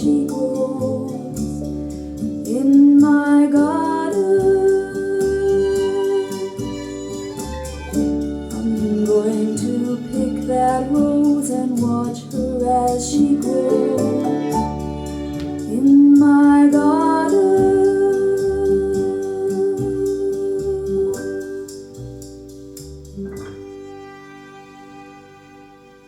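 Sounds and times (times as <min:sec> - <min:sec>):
woman singing a slow melody: 0:00.0 - 0:07.0, 0:08.5 - 0:14.9, 0:15.5 - 0:22.0
guitar: 0:00.0 - 0:26.0
held bass notes: 0:00.0 - 0:26.0.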